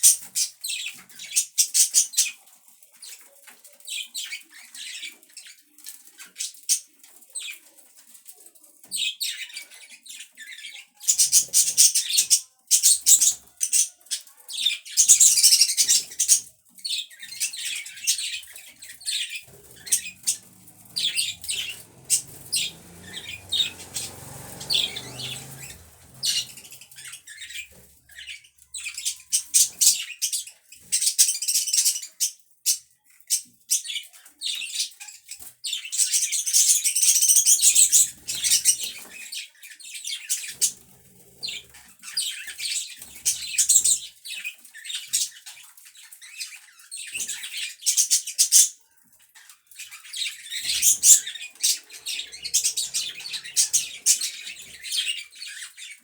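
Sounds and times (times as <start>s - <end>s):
budgerigars chirping: 10.4s - 32.2s, 39.9s - 48.7s, 49.8s - 56.0s.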